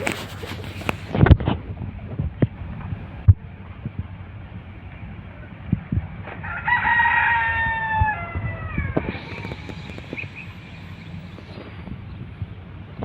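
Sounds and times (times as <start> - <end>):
rooster crowing: 6.3 - 11.4.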